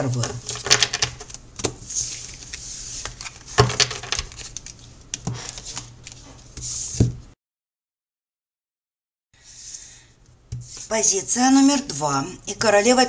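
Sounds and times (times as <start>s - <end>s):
cards being shuffled: 0.0s - 7.1s.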